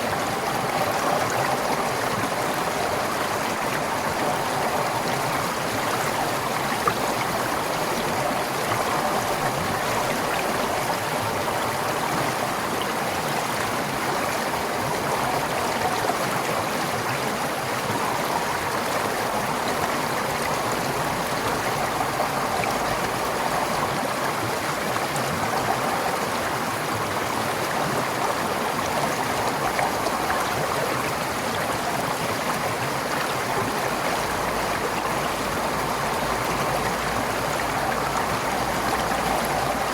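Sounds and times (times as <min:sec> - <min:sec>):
stream flowing over rocks: 0:00.0 - 0:39.9.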